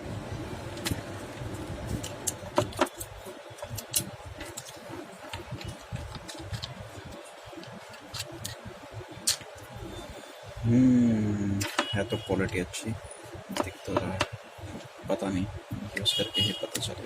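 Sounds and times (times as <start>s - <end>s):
handling noise: 0.6s - 9.6s.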